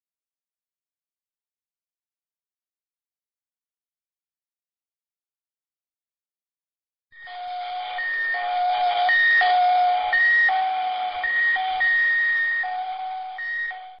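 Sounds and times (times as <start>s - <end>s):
electronic two-tone beeping: 7.2s - 14.0s.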